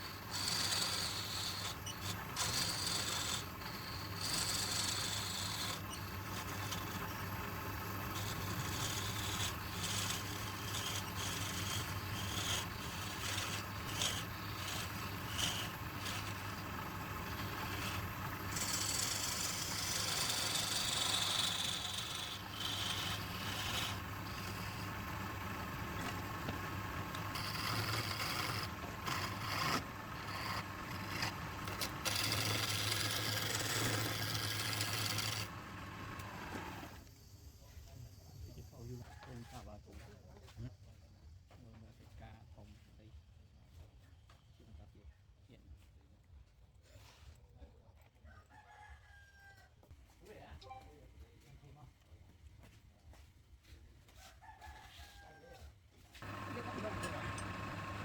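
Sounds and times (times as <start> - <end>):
lathe motor hum: 0.0 - 37.0, 56.2 - 58.0
tool scraping spinning wood: 0.0 - 37.1, 56.2 - 58.0.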